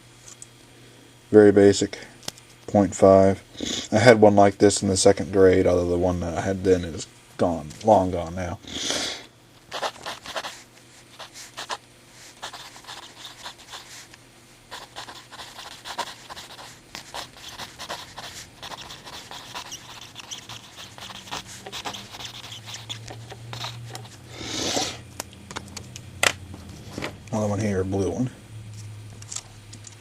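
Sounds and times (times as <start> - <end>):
pencil scratching on paper: 9.7 - 14.1, 14.7 - 24.2
small clicks and handling noise: 28.7 - 30.0.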